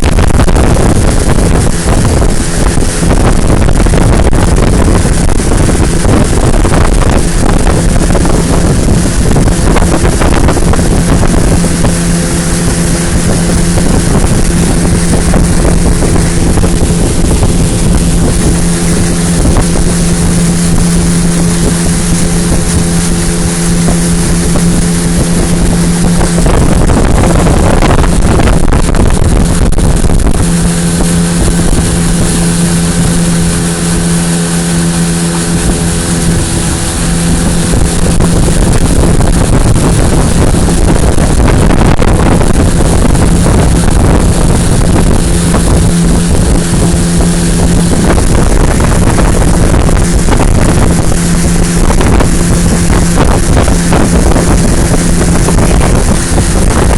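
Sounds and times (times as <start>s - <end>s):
motorboat engine running: 0.0s - 56.9s
wind rushing over microphone: 0.0s - 56.9s.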